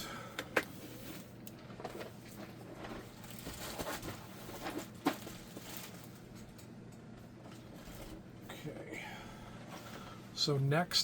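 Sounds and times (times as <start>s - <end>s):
plastic bags crinkling: 2.9s - 6.2s.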